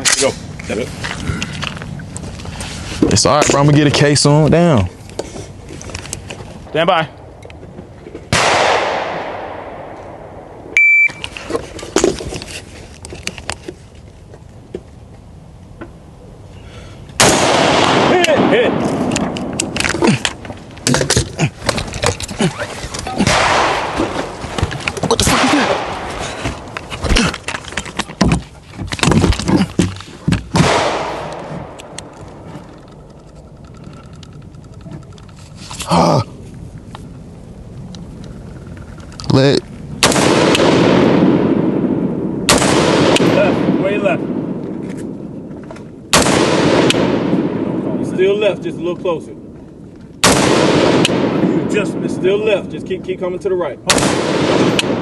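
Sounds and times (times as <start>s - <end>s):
rifle shot: 8.3s - 10.5s, 17.2s - 19.8s, 23.2s - 24.3s, 25.2s - 26.2s, 30.5s - 32.0s, 40.0s - 45.2s, 46.1s - 48.1s, 50.2s - 52.0s, 53.9s - 55.0s
sharp gunshots with echo: 8.3s - 10.5s, 17.2s - 19.4s, 23.2s - 24.3s, 25.2s - 26.2s, 30.5s - 31.8s, 40.0s - 44.6s, 46.1s - 48.3s, 50.2s - 52.1s, 53.9s - 55.0s
short high electronic beep: 10.8s - 11.2s.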